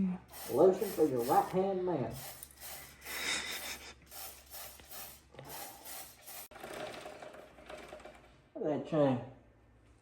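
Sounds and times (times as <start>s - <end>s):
aerosol spray hissing: 0.3s - 6.5s.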